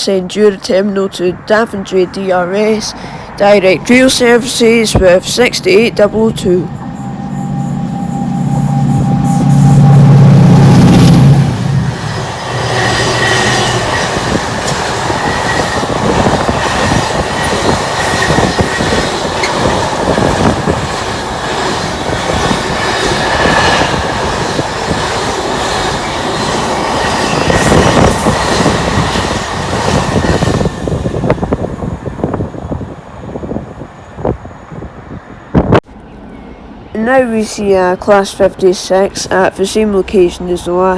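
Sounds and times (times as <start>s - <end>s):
locomotive engine: 2.9s - 32.7s
wheels clacking over rail joints: 12.0s - 30.8s.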